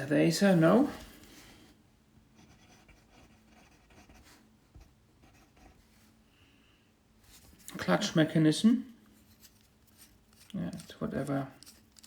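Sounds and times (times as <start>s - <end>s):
faint rubbing: 9.1s - 12.0s.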